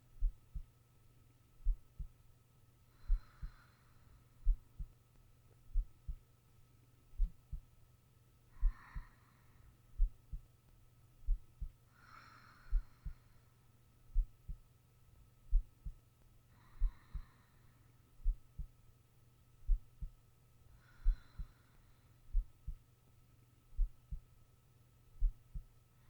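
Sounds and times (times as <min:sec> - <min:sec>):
heartbeat thumping: 0:00.2 - 0:00.7, 0:01.6 - 0:02.2, 0:03.1 - 0:03.5, 0:04.4 - 0:04.9, 0:05.7 - 0:06.2, 0:07.2 - 0:07.7, 0:10.0 - 0:10.4, 0:11.2 - 0:11.8, 0:14.1 - 0:14.6, 0:15.5 - 0:16.0, 0:16.8 - 0:17.3, 0:18.2 - 0:18.8, 0:19.6 - 0:20.2, 0:21.0 - 0:21.5, 0:22.3 - 0:22.8, 0:23.8 - 0:24.3, 0:25.2 - 0:25.7
soft slow breathing: 0:02.8 - 0:05.0, 0:08.5 - 0:10.4, 0:11.3 - 0:14.3, 0:15.5 - 0:18.7, 0:19.7 - 0:22.8.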